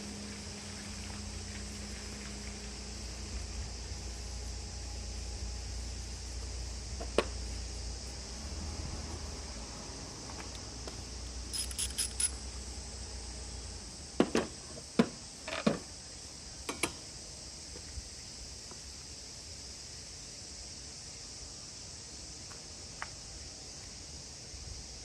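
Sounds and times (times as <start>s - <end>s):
light metallic clinks: 11.5s - 12.4s
high-pitched insect drone: 11.5s - 13.2s.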